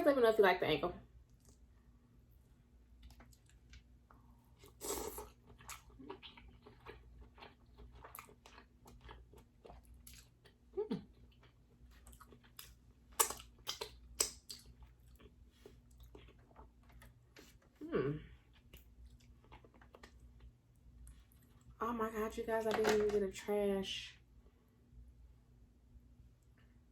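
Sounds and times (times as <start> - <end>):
wet chewing: 3.0 - 3.9, 4.6 - 17.8, 18.4 - 21.7
crab shell crunches and clicks: 12.4 - 14.7.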